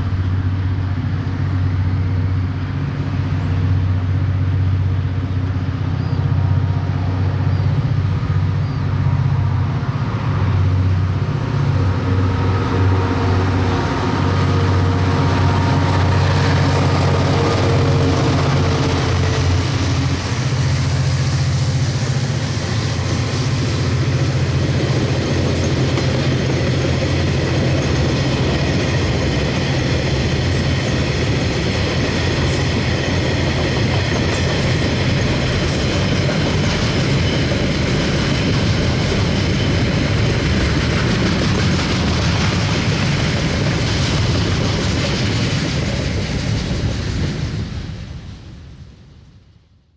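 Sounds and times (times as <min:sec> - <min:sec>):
diesel locomotive engine: 0:00.0 - 0:49.9
wagons clacking over rail joints: 0:22.6 - 0:46.6.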